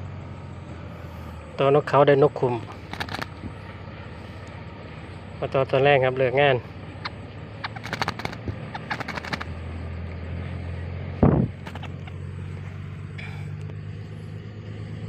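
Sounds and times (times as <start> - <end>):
engine idling: 0.0 - 15.0
sharp clicks: 2.6 - 3.5, 7.0 - 9.6, 11.6 - 12.1.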